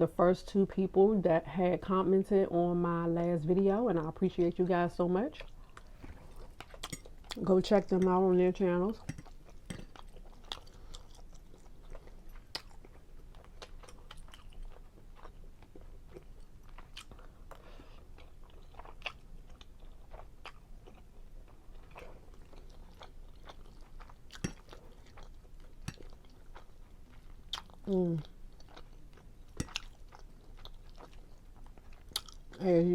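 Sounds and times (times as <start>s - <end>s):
close-up chewing: 5.4s - 7.5s, 9.0s - 32.6s.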